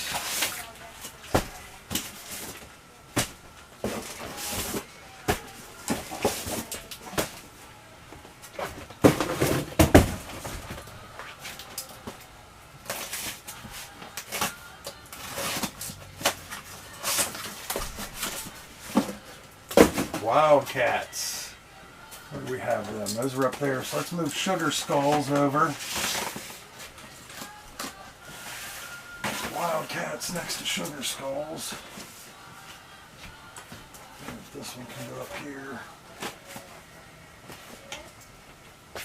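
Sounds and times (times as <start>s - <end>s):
cardboard boxes knocking and scraping: 8.6s - 10.9s.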